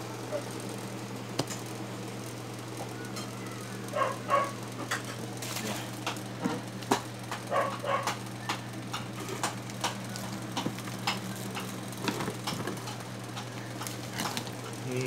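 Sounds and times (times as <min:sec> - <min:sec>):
steady low hum: 0:00.0 - 0:15.0
hands handling packaging: 0:09.3 - 0:14.8.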